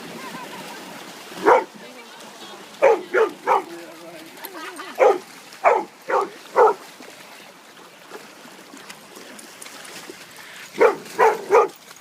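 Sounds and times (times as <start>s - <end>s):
dog barking: 1.4s - 1.7s, 2.8s - 3.7s, 5.0s - 6.8s, 10.8s - 11.8s.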